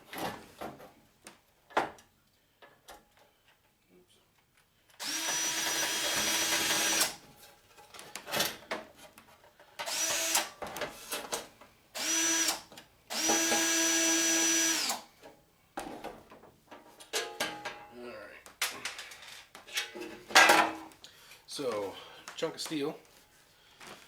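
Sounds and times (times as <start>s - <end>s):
power drill whining: 5.0s - 7.2s, 9.8s - 10.5s, 12.0s - 15.1s.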